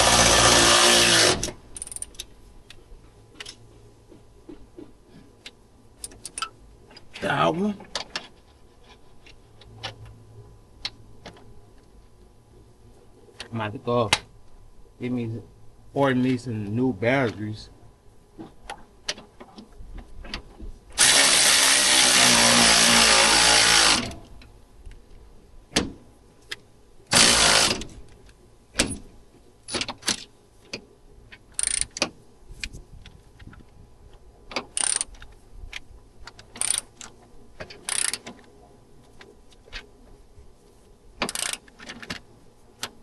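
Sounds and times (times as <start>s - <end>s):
power tool running: 0.0s - 1.5s, 21.0s - 24.2s, 27.1s - 27.8s.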